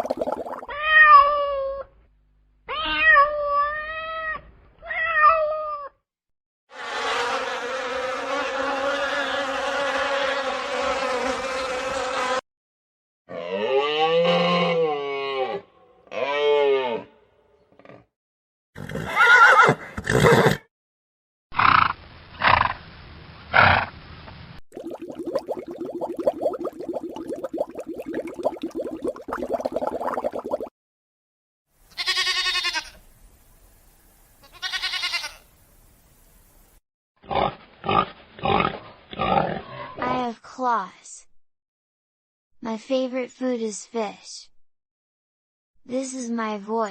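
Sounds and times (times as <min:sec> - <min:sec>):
goat bleating: 0:31.9 - 0:33.0, 0:34.4 - 0:35.4.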